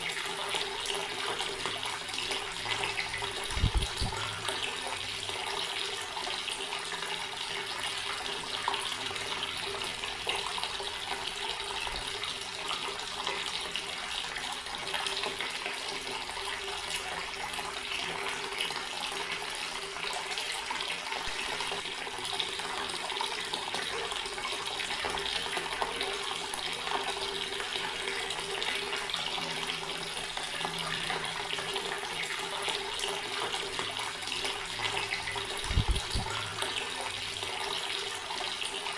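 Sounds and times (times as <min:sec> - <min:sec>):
water running from tap: 0:00.0 - 0:38.9.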